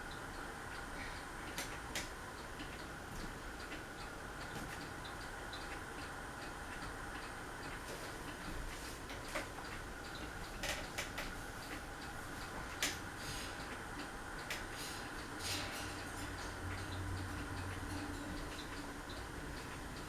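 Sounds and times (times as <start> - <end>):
ceiling fan humming: 0.0 - 20.0
light ticking: 9.1 - 20.0.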